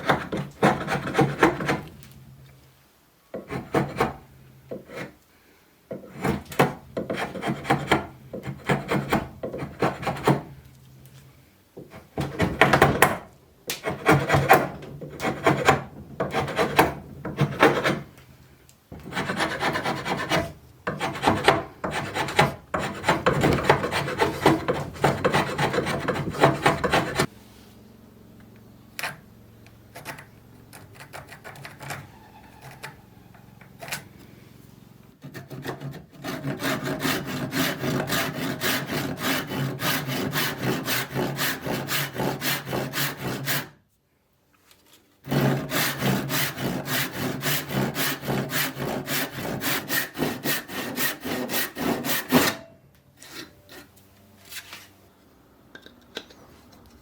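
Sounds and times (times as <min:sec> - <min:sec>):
wood rasp stroking on wood: 0:00.0 - 0:01.9, 0:05.9 - 0:10.5, 0:11.9 - 0:18.2, 0:19.0 - 0:27.3, 0:35.2 - 0:43.8, 0:45.2 - 0:52.6.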